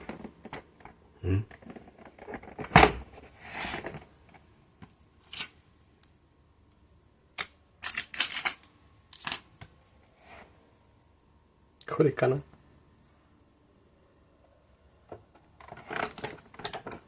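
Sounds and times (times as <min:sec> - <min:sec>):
robot vacuum plastic clicks and rattles: 0:15.1 - 0:17.0.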